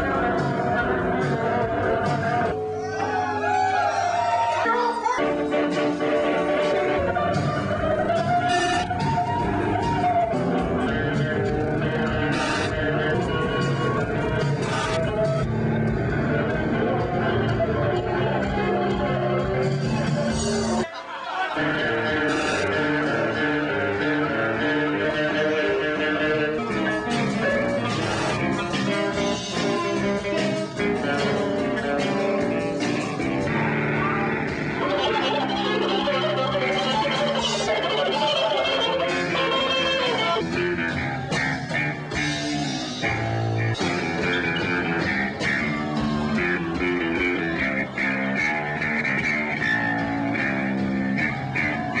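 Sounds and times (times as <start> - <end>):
live rock band playing: 0.0 - 20.8, 21.6 - 52.0
bass guitar: 0.0 - 20.9, 21.6 - 52.0
electric guitar: 21.6 - 52.0.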